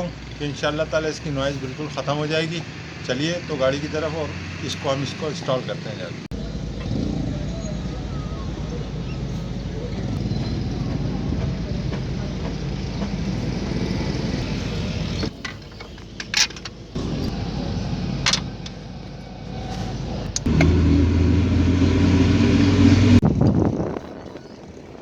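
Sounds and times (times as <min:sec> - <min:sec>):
deep hum: 0:19.5 - 0:23.8
car engine running: 0:20.0 - 0:23.4.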